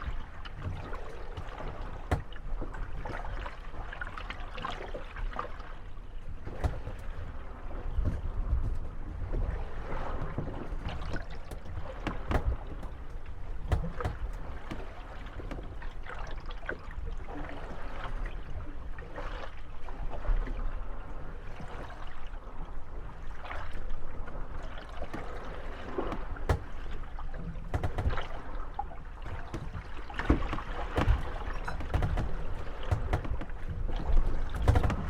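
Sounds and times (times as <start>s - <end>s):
wooden boats knocking together: 0.0s - 3.3s, 6.4s - 16.0s, 25.0s - 35.0s
boats creaking: 0.0s - 3.9s, 4.6s - 17.0s, 24.5s - 35.0s
water lapping: 0.0s - 35.0s.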